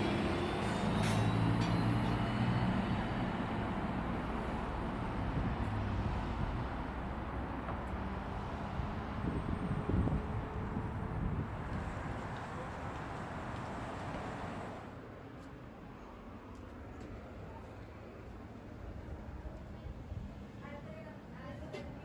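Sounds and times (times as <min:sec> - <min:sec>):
vehicle rumble: 0:00.0 - 0:14.9.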